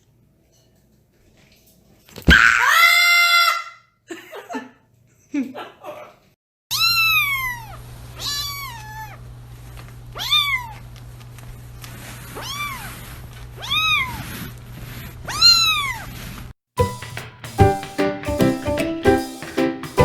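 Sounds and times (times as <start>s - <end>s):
cat meowing: 6.7s - 9.2s, 10.2s - 10.8s, 12.4s - 14.3s, 15.3s - 16.2s.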